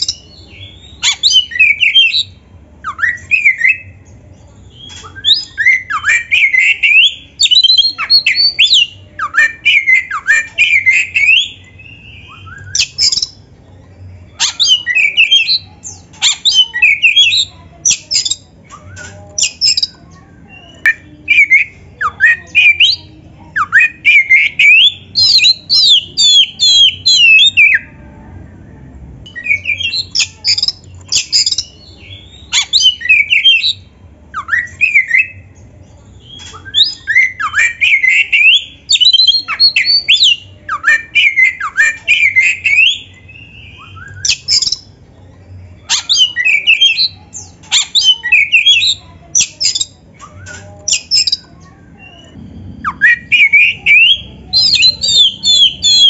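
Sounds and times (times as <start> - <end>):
bird whistled song with clicks: 4.8 - 13.4, 17.9 - 20.0, 36.2 - 44.9, 45.9 - 56.0.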